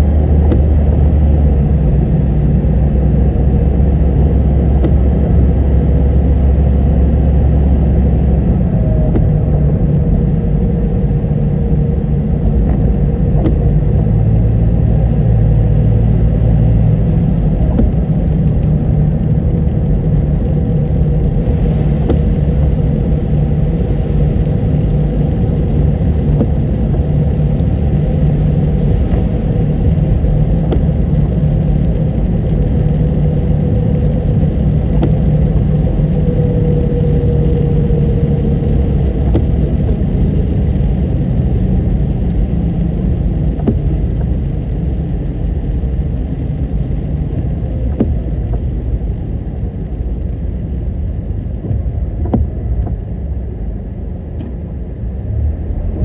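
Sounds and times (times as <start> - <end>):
car road and engine noise: 0.0 - 56.0
faint whine: 0.0 - 56.0.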